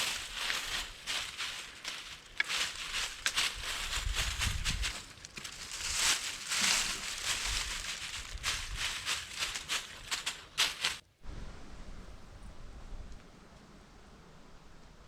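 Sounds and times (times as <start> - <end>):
dry leaves rustling and snapping: 0.0 - 11.0
faint hiss: 10.9 - 15.0.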